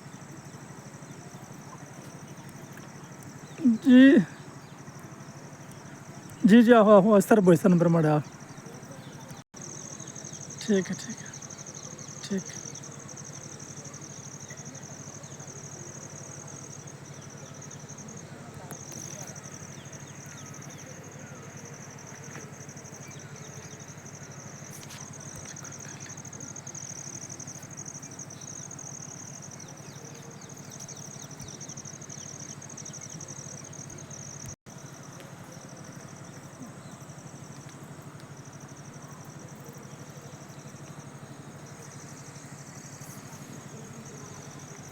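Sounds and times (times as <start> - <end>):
insects trilling: 0.0 - 44.9.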